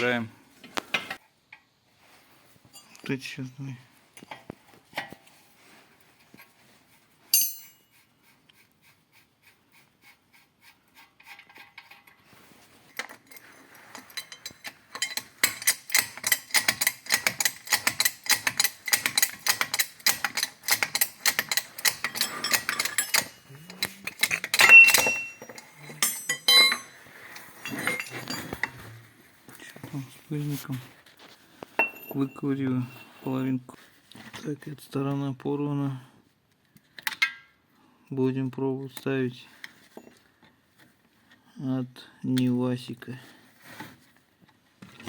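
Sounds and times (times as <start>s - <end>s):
metal tool clink: 2.7s - 3.1s, 7.3s - 7.9s, 13.1s - 28.9s, 31.8s - 33.3s
metal scraping: 11.0s - 29.3s
rapid metallic clicks: 15.0s - 24.6s.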